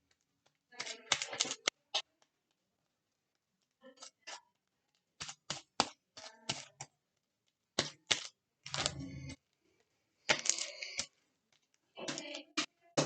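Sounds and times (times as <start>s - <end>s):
slime squelching: 0.0s - 13.0s
slime clicking and popping: 0.7s - 2.3s, 7.7s - 8.9s.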